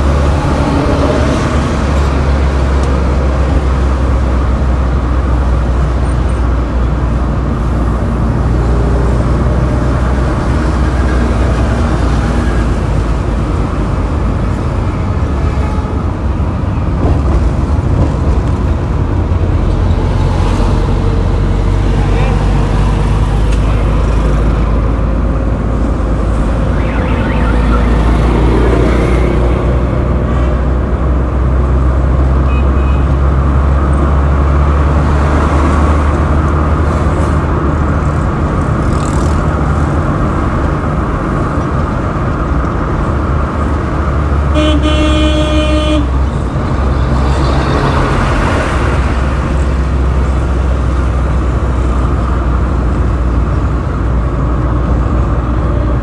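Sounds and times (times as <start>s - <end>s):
road traffic rumble: 0.0s - 56.0s
vehicle horn honking: 26.6s - 29.4s, 32.5s - 33.1s, 44.5s - 46.2s.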